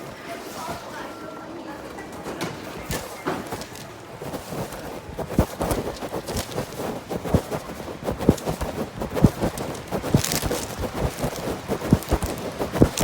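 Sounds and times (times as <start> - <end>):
footsteps walking: 0.0 - 13.0.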